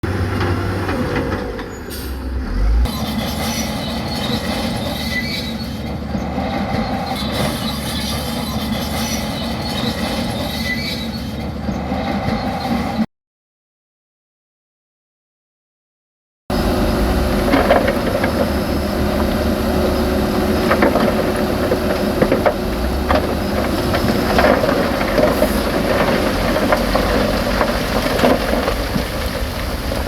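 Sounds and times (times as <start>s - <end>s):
heavy machinery clattering: 16.5s - 30.0s.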